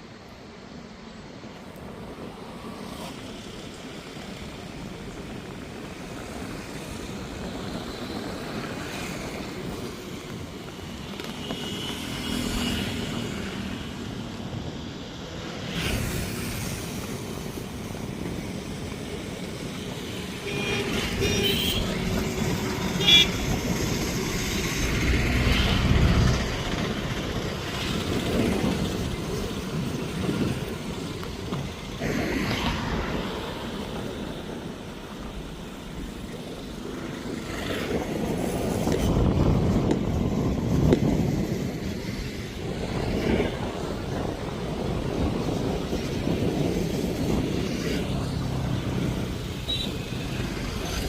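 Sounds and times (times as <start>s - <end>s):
steady traffic rushing noise: 0.0s - 51.0s
vehicles passing: 0.0s - 51.0s
vehicle horn tooting: 20.4s - 21.9s, 23.0s - 23.4s.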